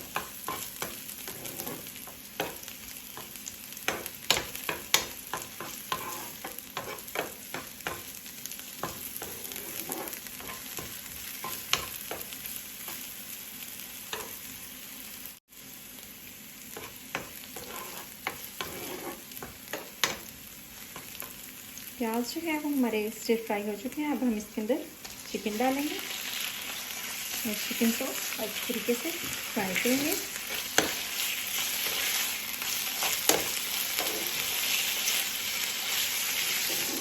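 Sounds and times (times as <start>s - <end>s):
onions sizzling in oil: 0.0s - 37.0s
utensil scraping a pan: 0.5s - 2.6s, 5.4s - 8.0s, 8.8s - 10.8s, 17.6s - 19.5s, 29.8s - 35.2s, 35.9s - 37.0s.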